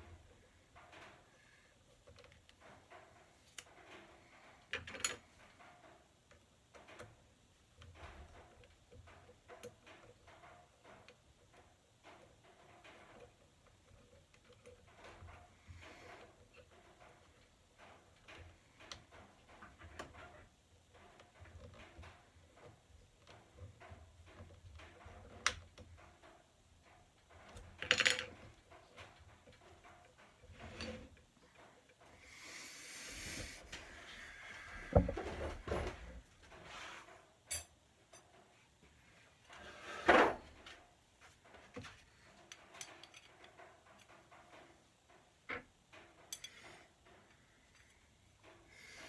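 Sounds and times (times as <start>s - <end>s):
parts and tools clicking: 27.2s - 32.3s, 41.8s - 44.7s, 45.5s - 48.6s.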